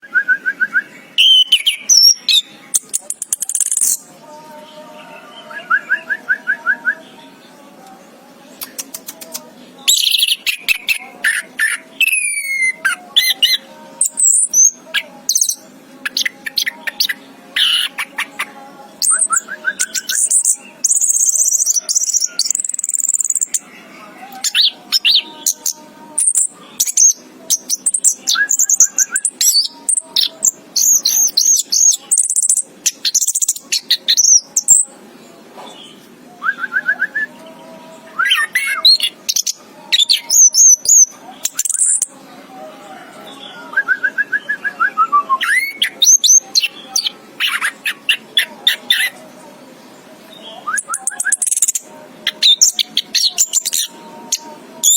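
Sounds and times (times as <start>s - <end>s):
thrush singing: 0.0s - 54.9s.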